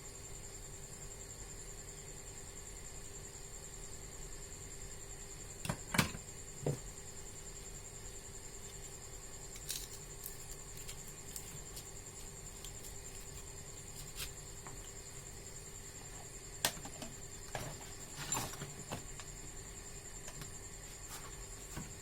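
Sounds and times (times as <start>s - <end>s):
small objects clicking and tapping: 9.6s - 11.9s.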